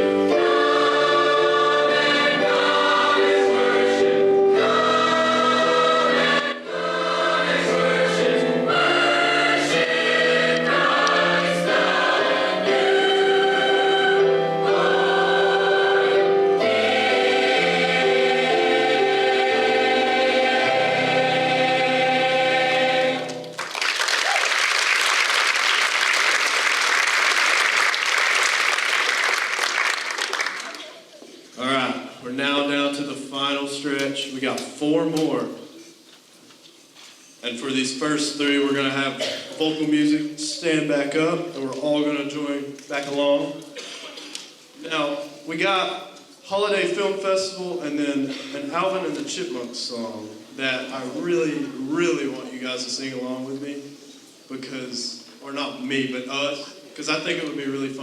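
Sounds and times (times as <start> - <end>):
choir singing in parts: 0.0 - 23.7
audience applause: 23.4 - 31.1.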